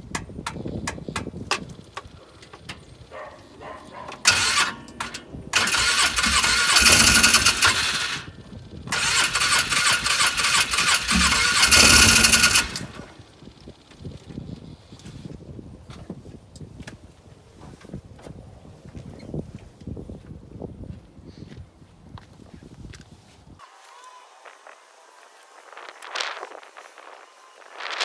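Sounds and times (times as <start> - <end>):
engine starter cranking: 4.0 - 13.4.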